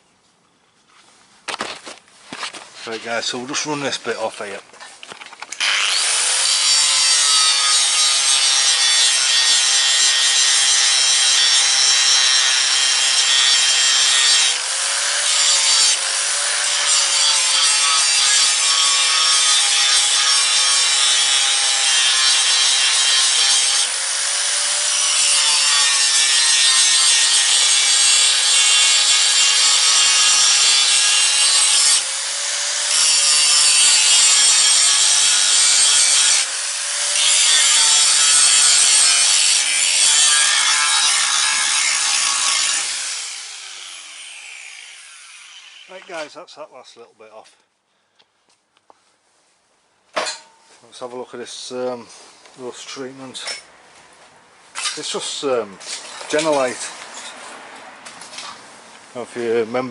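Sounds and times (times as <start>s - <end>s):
angle grinder grinding metal: 5.5s - 46.3s, 54.8s - 57.4s.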